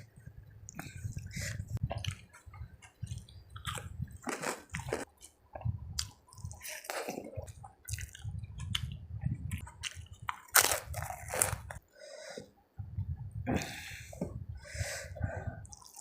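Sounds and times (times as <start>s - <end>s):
wet chewing mouth sounds: 0.7s - 11.8s, 15.6s - 16.0s.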